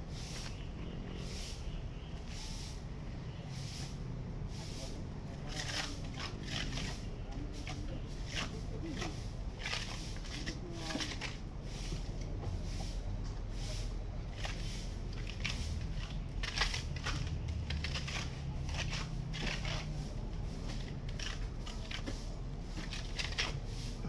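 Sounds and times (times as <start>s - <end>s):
concrete and gravel crunching: 4.5s - 24.0s.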